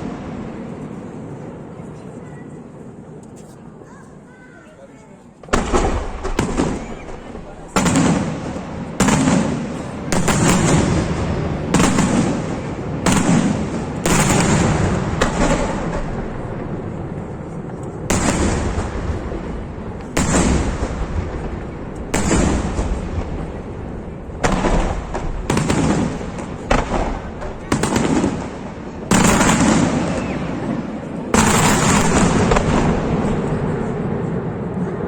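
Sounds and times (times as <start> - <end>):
firework shells bursting: 5.5 - 16.8, 17.9 - 33.7.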